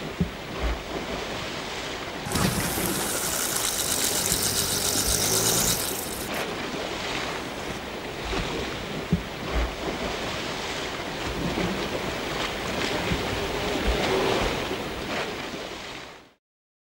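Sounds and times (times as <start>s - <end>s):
sea waves on shore: 0.0s - 16.3s.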